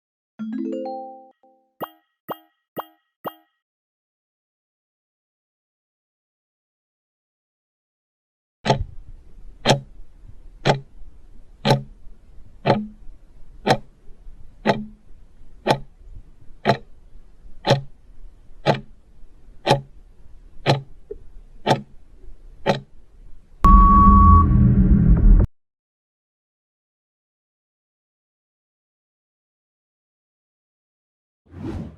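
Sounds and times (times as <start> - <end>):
countdown timer ticking: 0.4 - 3.6, 8.7 - 8.9, 9.6 - 9.9, 10.6 - 11.0, 11.6 - 12.0, 12.6 - 13.9, 14.6 - 15.0, 15.6 - 15.9, 16.6 - 16.9, 17.6 - 18.0, 18.6 - 19.0, 19.6 - 19.9, 20.6 - 20.9, 21.7 - 21.9, 22.6 - 22.9
steady beep: 23.6 - 24.8.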